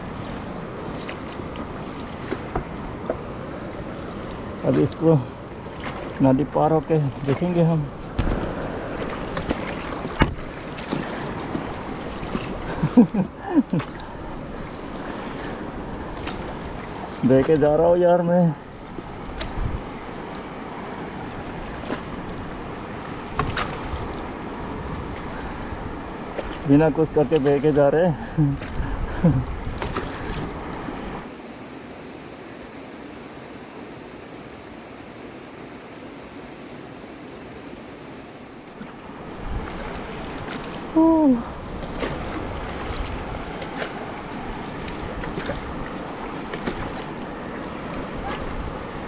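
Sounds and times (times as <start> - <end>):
river water rushing: 0.0 - 49.0
water splashing against air mattress: 5.7 - 14.2, 26.0 - 31.3, 38.6 - 49.0
person crying out: 41.0 - 41.5.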